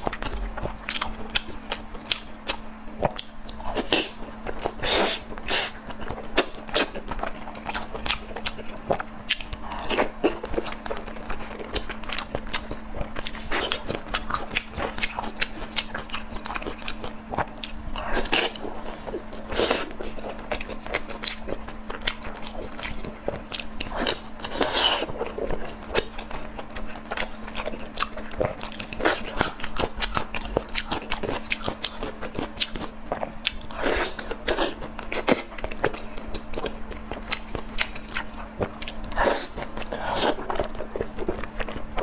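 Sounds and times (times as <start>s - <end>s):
faint hum: 0.0s - 42.0s
person chewing crunchy food: 0.0s - 42.0s.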